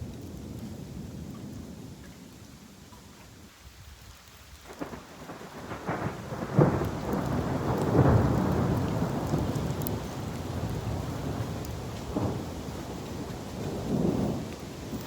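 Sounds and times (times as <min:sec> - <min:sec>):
rain: 0:00.0 - 0:15.0
thunder rumbling: 0:04.8 - 0:15.0.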